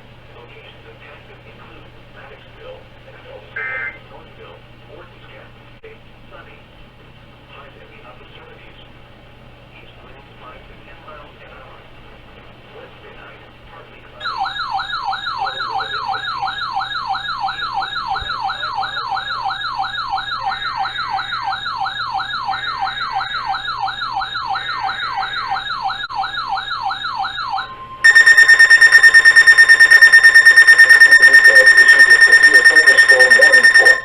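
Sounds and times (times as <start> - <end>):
electronic siren warbling: 14.2 - 34.0
steady alert tone: 14.2 - 34.0.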